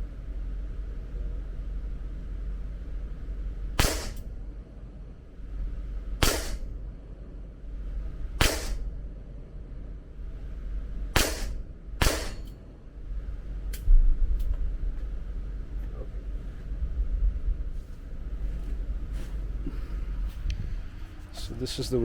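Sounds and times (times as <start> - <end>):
gunshots: 3.8 - 4.2, 6.2 - 6.7, 8.4 - 8.8, 11.2 - 12.5.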